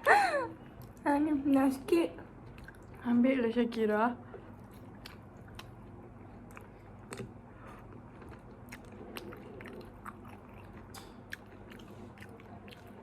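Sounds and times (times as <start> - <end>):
faint low hum: 0.0 - 13.0
people chewing food: 2.4 - 3.1, 4.2 - 13.0.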